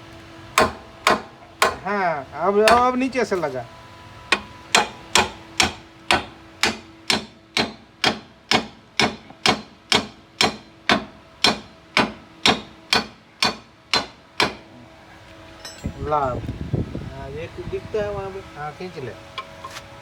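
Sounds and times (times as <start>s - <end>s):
hammer blows on metal: 2.6s - 3.1s.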